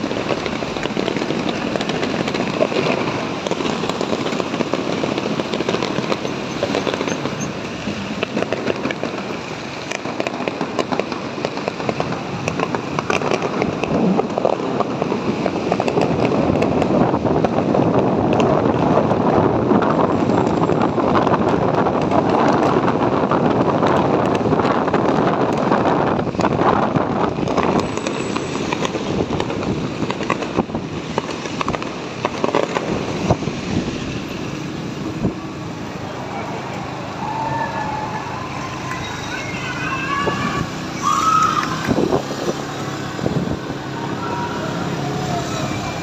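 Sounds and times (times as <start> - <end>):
fireworks crackling: 0.0 - 46.0
traffic noise: 0.0 - 46.0
wind rushing: 10.5 - 46.0.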